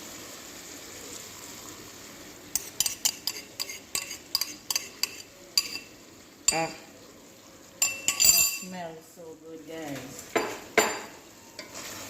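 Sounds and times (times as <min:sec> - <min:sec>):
food sizzling in a pan: 0:00.0 - 0:12.0
utensil clinking against pan: 0:02.6 - 0:05.9, 0:07.8 - 0:08.8.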